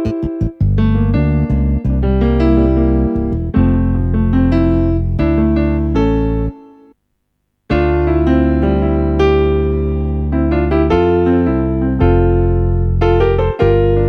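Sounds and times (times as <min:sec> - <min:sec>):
heavy synth bass line: 0:00.0 - 0:06.0
electric piano chords: 0:00.0 - 0:06.8, 0:07.7 - 0:14.0.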